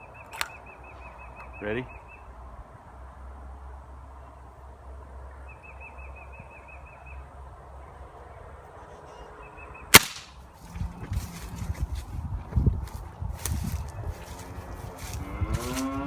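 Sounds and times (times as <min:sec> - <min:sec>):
air rifle shot: 0:09.9 - 0:10.4.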